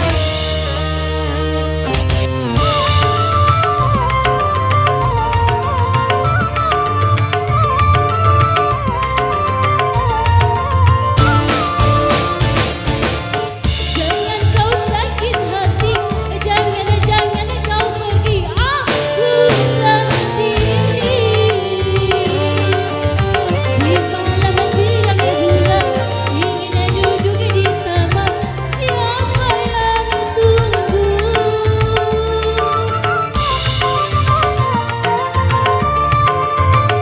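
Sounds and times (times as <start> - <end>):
busy drum beat: 0.0 - 1.1, 1.9 - 37.0
wavering melody: 0.0 - 14.0, 19.8 - 28.7, 32.3 - 37.0
band playing dance music: 0.0 - 15.2, 18.3 - 28.7
bass line: 0.0 - 18.7, 19.5 - 37.0.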